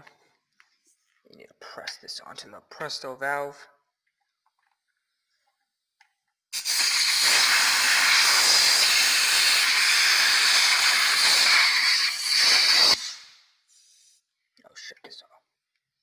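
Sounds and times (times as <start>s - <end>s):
compressed air hissing: 6.5s - 14.3s.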